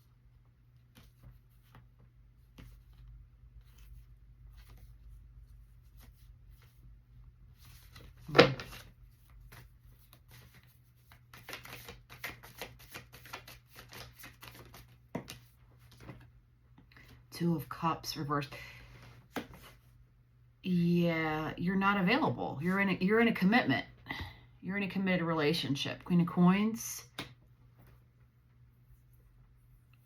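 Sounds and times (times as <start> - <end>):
cards shuffling: 7.6 - 16.3, 19.3 - 19.8.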